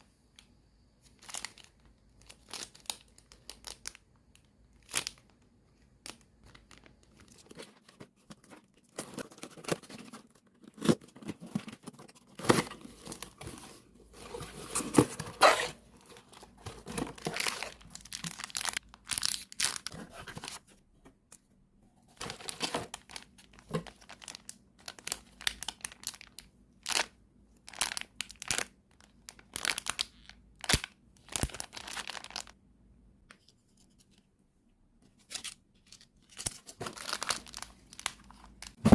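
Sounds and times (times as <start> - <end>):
packaging tearing and crinkling: 12.4 - 20.6, 29.3 - 32.6, 36.3 - 38.9.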